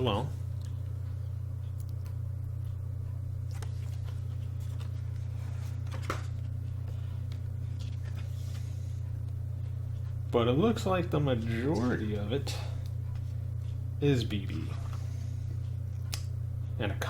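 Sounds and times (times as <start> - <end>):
steady low hum: 0.0 - 17.0
paper pages rustling: 3.4 - 10.2.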